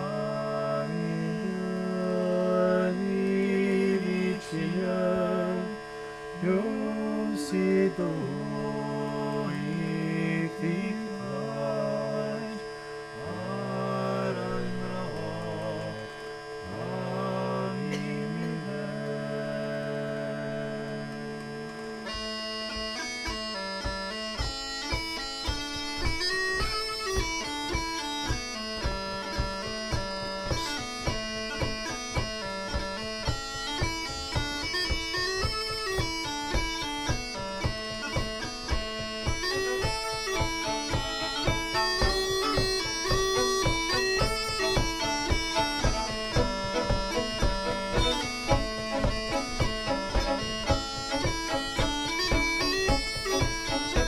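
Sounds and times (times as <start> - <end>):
fiddle: 0.0 - 54.0
flute: 20.6 - 54.0
guitar: 21.5 - 54.0
frame drum beat: 22.8 - 54.0.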